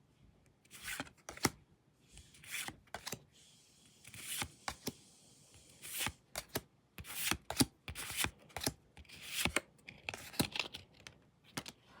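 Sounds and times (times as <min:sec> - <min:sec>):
cards sliding swishes: 0:02.2 - 0:09.6.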